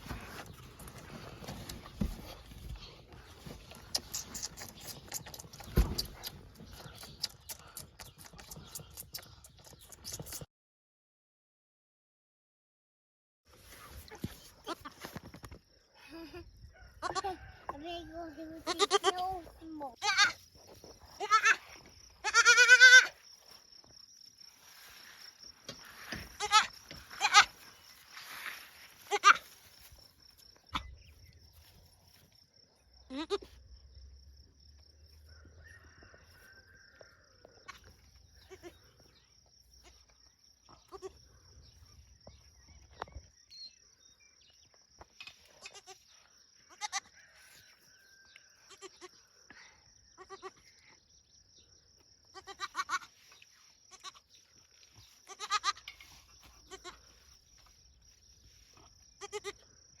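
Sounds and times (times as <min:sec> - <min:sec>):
goat kid bleating: 0:14.1 - 0:15.0, 0:17.0 - 0:20.4, 0:21.2 - 0:23.2, 0:26.1 - 0:27.6, 0:29.0 - 0:29.5, 0:33.1 - 0:33.5, 0:37.7 - 0:38.8, 0:40.8 - 0:41.2, 0:45.6 - 0:46.1, 0:46.7 - 0:47.1, 0:48.7 - 0:49.2, 0:50.2 - 0:50.7, 0:52.3 - 0:53.2, 0:53.9 - 0:54.3, 0:55.2 - 0:55.9, 0:56.6 - 0:57.0, 0:59.2 - 0:59.6.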